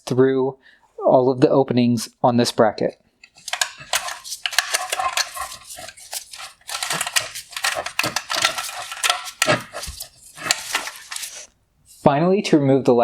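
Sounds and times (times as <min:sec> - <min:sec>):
plastic connectors clattering: 0:03.2 - 0:11.5.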